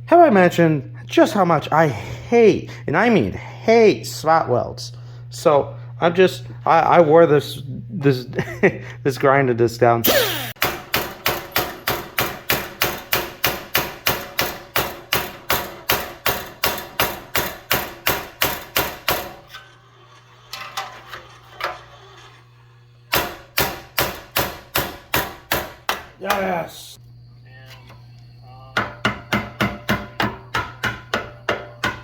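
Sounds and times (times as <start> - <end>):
hammer blows on sheet steel: 23.1 - 26.6.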